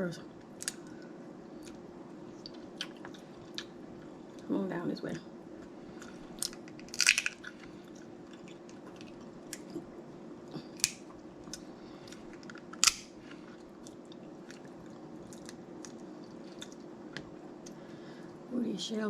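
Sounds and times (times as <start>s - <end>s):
crab shells cracking: 0.5s - 1.0s, 6.0s - 9.8s, 10.6s - 17.3s
shell clicks and crinkles: 6.1s - 9.8s, 10.7s - 14.6s.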